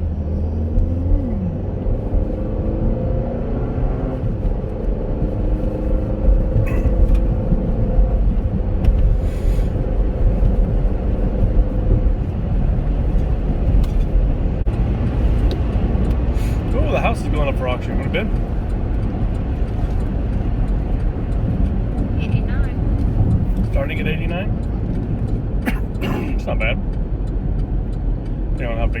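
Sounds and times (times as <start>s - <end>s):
engine and tyre rumble: 0.0s - 29.0s.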